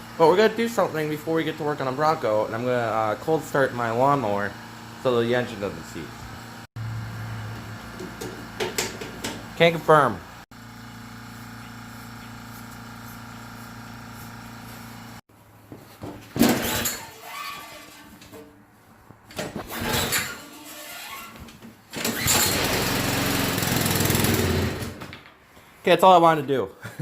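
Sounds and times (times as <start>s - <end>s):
lawn mower engine starting: 21.9s - 25.0s.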